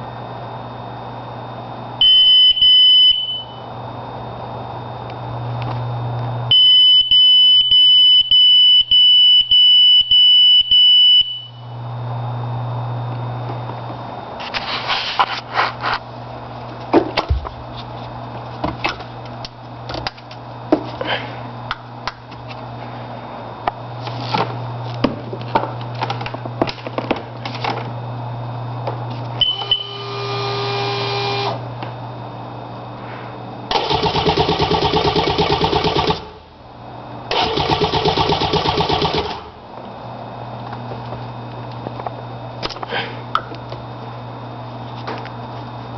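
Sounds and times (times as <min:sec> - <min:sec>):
steady hum: 0:00.0 - 0:45.9
starter motor cranking engine: 0:33.7 - 0:36.3, 0:37.3 - 0:39.5.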